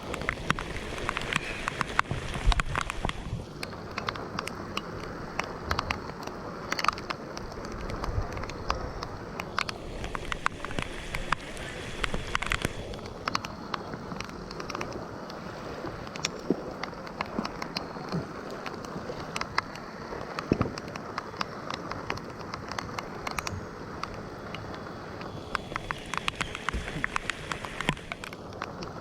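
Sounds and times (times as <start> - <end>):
raindrops ticking close by: 0.0 - 15.4, 16.0 - 29.0
steady rain falling: 0.0 - 29.0.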